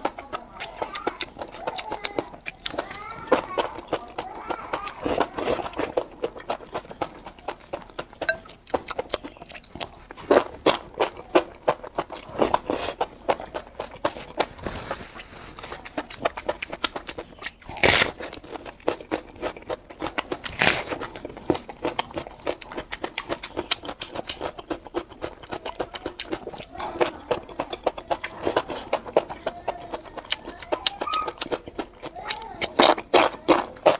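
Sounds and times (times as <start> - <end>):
wet crunchy chewing: 0.0 - 33.9.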